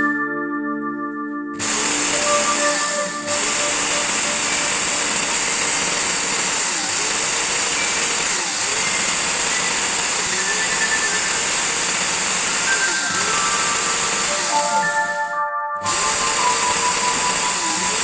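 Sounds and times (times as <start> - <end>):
small electric motor running: 1.6 - 15.1, 15.8 - 18.0.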